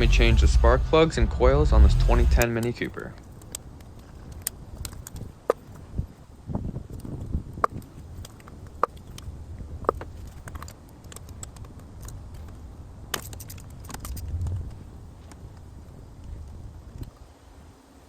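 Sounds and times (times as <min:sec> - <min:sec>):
brief low rumble: 0:00.0 - 0:02.8, 0:14.1 - 0:15.2.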